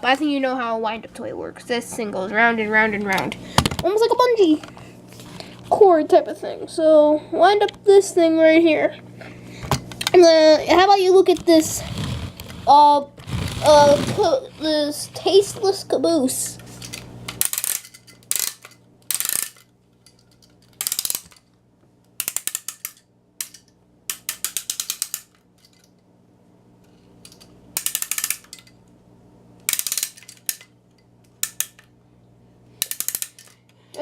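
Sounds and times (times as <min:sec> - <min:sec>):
wind-up toy ratchet clicking: 0:17.4 - 0:19.7, 0:20.4 - 0:21.4, 0:22.2 - 0:25.9, 0:27.3 - 0:28.7, 0:29.7 - 0:30.7, 0:31.4 - 0:31.8, 0:32.8 - 0:33.6.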